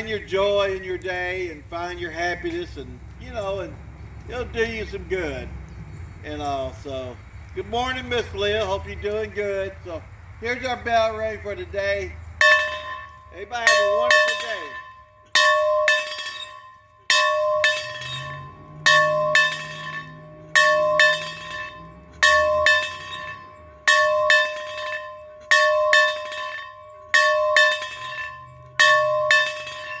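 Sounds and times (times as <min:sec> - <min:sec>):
bell ringing: 0:12.4 - 0:30.0.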